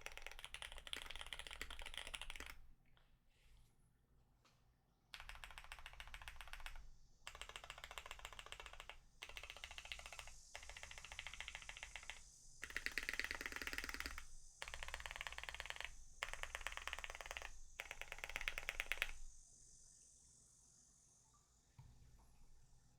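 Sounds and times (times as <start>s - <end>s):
fast typing on mechanical keyboard: 0.0s - 2.6s, 5.1s - 19.3s.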